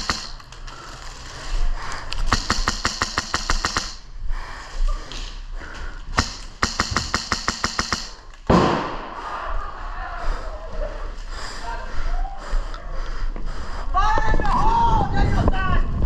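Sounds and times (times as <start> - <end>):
airsoft gun full-auto bursts: 0.0 - 0.4, 2.3 - 4.1, 6.2 - 8.2.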